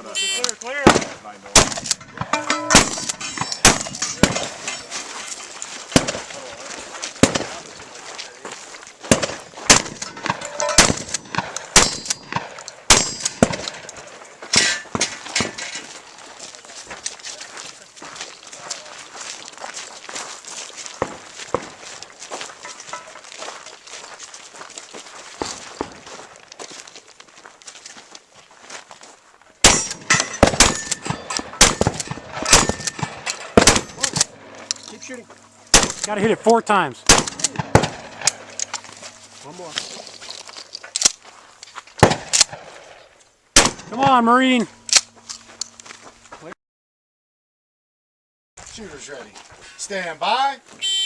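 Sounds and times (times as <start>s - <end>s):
shotgun shots: 0.2s - 4.8s, 5.9s - 6.5s, 7.2s - 7.7s, 9.1s - 13.9s, 29.6s - 34.7s, 35.7s - 36.3s, 37.0s - 38.9s, 42.0s - 43.0s, 43.6s - 45.1s
steel targets clanging: 0.2s - 6.3s, 9.7s - 13.9s, 14.5s - 16.0s, 29.6s - 40.9s.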